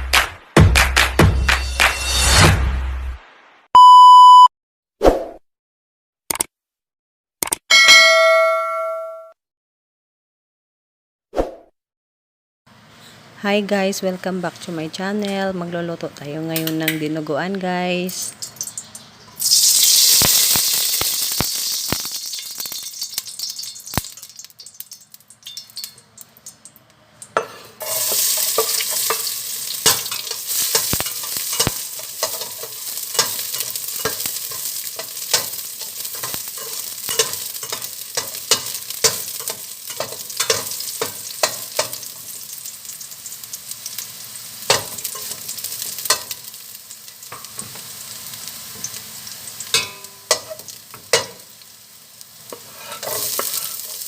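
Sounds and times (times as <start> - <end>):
food sizzling in hot oil: 1.9 - 2.6, 18.1 - 54.0
utensil scraping a pan: 27.4 - 42.0, 52.5 - 54.0.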